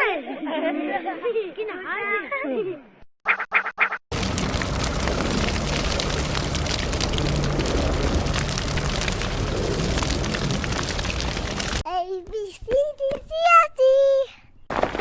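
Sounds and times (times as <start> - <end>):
fire roaring and crackling: 4.1 - 11.9.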